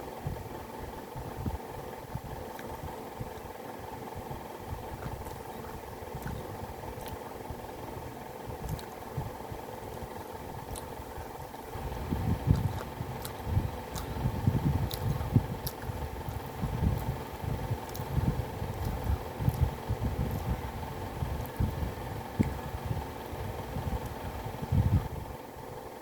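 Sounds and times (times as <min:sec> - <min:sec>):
low hum: 0:00.0 - 0:26.0
person chewing food: 0:02.5 - 0:03.6, 0:04.8 - 0:07.3, 0:08.6 - 0:24.3.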